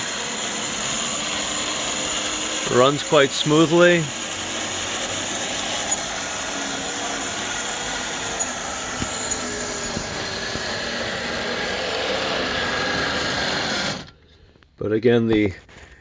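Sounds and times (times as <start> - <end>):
wheels clicking on rails: 0.0 - 14.2
model train motor whirring: 0.0 - 14.5.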